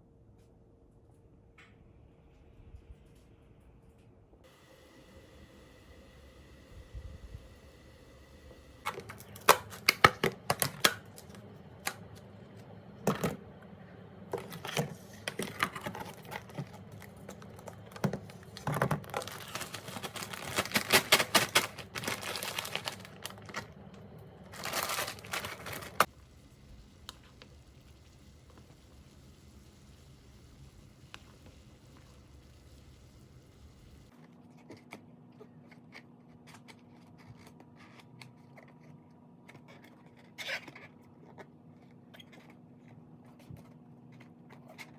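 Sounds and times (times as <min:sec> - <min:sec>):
plastic packaging crinkling: 0:08.8 - 0:12.2, 0:14.3 - 0:26.1.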